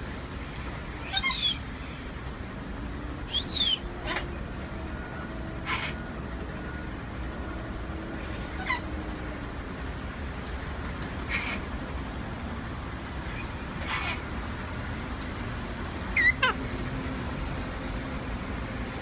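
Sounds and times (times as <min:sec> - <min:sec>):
parrots giving harsh calls: 0:13.8 - 0:14.4, 0:16.1 - 0:16.8.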